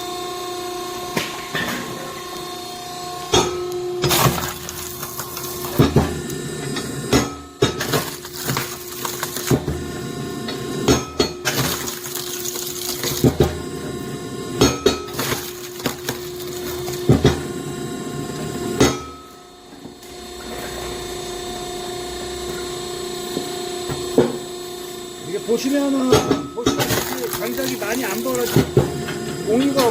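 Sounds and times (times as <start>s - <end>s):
hydraulic pump hum: 0.0s - 29.9s
wood splitting cracks: 4.0s - 6.1s, 7.2s - 9.7s, 11.4s - 13.4s, 14.9s - 17.4s, 26.7s - 28.7s.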